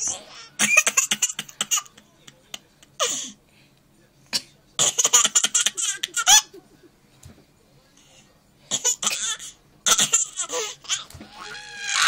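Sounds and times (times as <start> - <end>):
person laughing: 5.8 - 7.0.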